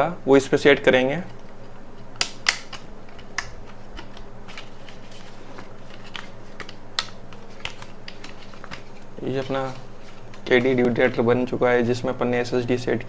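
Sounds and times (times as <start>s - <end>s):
low steady hum: 0.0s - 13.0s
screwdriver and hands clicking: 1.3s - 11.2s.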